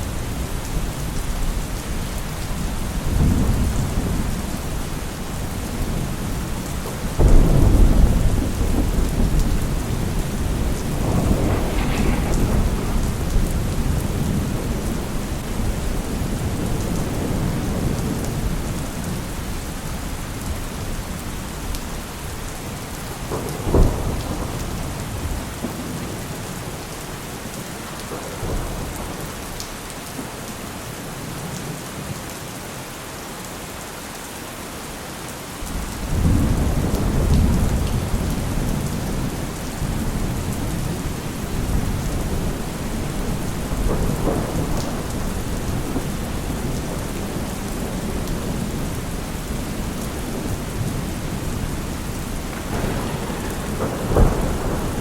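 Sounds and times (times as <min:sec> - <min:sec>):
heavy rain: 0:00.0 - 0:55.0
deep thunder rumble: 0:02.4 - 0:19.2, 0:35.8 - 0:55.0
sharp thunderclap: 0:07.1 - 0:18.6, 0:23.3 - 0:26.2, 0:36.0 - 0:48.8, 0:49.4 - 0:55.0.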